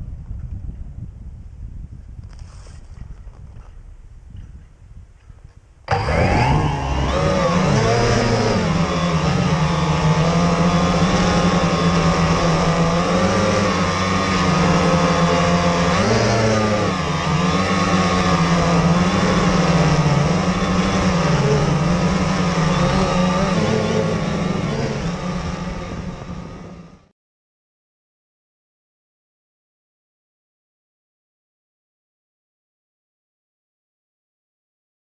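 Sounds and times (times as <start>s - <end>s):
drone propellers buzzing: 5.9s - 27.1s.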